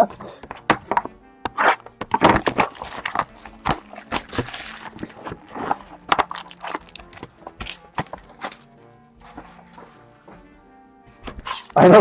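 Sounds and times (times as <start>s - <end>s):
cards clicking and tapping: 0.1s - 8.7s
wrapper crinkling: 2.2s - 8.7s, 11.3s - 12.0s.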